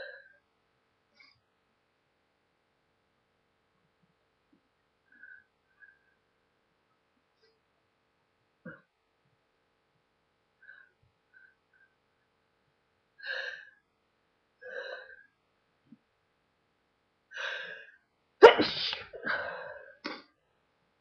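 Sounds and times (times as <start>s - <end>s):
person sneezing: 18.4s - 19.4s.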